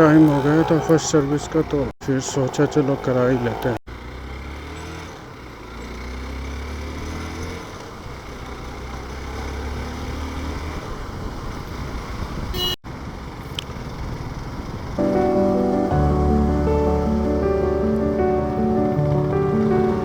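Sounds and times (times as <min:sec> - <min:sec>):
motorcycle engine hum: 0:00.0 - 0:20.0
traffic: 0:00.0 - 0:20.0
background music: 0:15.0 - 0:20.0.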